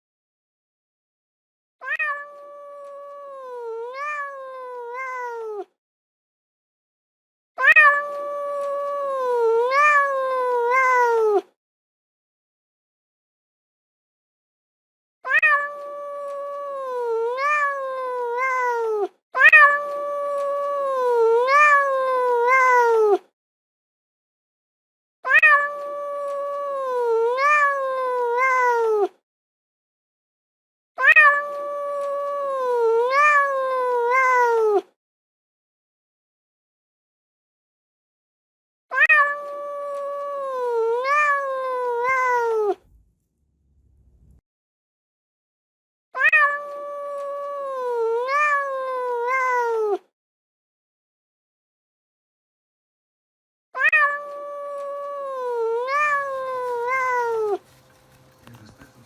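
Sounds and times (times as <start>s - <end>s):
cat meowing: 1.8s - 5.7s, 7.6s - 11.5s, 15.3s - 23.3s, 25.3s - 29.2s, 31.0s - 34.9s, 38.9s - 43.0s, 46.2s - 50.1s, 53.8s - 57.6s.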